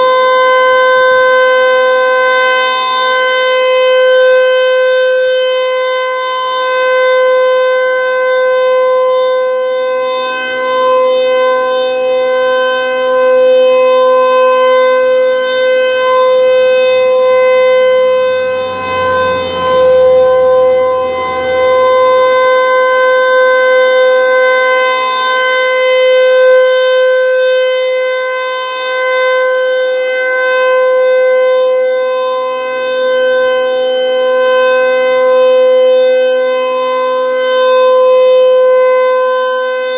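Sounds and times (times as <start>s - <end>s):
warning siren steady tone: 0.0s - 39.9s.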